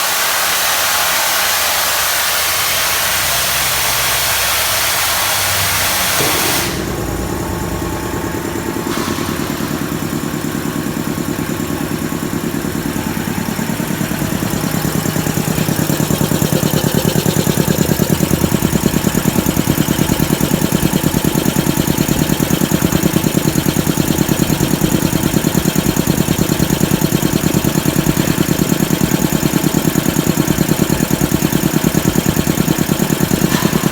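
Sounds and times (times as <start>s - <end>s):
loud air hiss: 0.0s - 7.5s, 8.6s - 10.3s
air compressor running: 0.0s - 33.9s.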